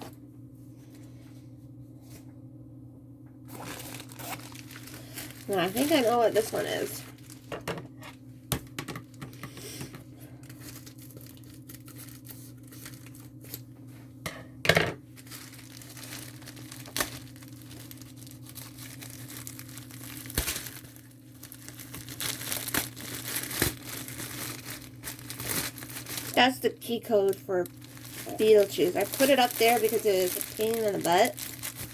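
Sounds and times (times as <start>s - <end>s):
plastic packaging crinkling and tearing: 3.5s - 8.1s, 10.4s - 13.7s, 15.1s - 31.9s.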